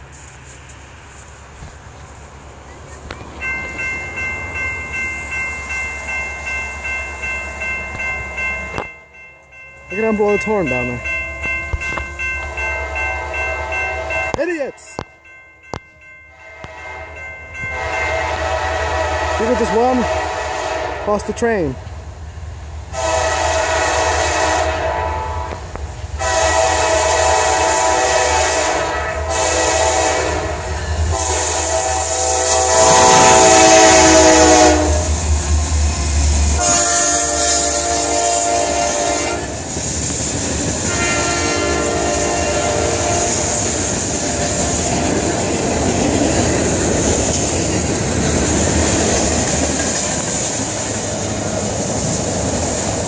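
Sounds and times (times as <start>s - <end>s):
locomotive engine rumble: 0.0s - 53.0s
train horn blasts: 11.0s - 14.4s, 16.3s - 21.3s, 22.9s - 25.6s, 26.2s - 35.2s, 36.6s - 39.6s, 40.8s - 43.7s.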